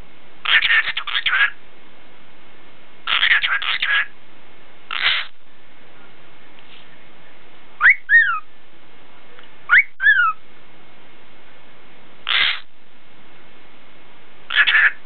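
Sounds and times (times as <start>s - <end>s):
cockatiel whistling: 7.8s - 8.4s, 9.7s - 10.4s.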